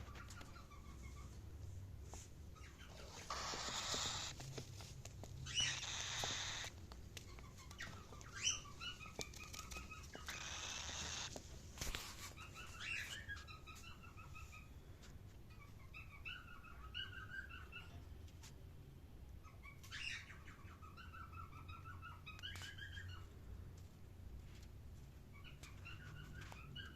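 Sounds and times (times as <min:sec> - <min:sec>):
cockatiel chirping: 0:00.0 - 0:01.4, 0:02.6 - 0:04.4, 0:05.4 - 0:11.4, 0:12.2 - 0:14.7, 0:15.5 - 0:18.0, 0:19.4 - 0:23.3, 0:25.3 - 0:26.9.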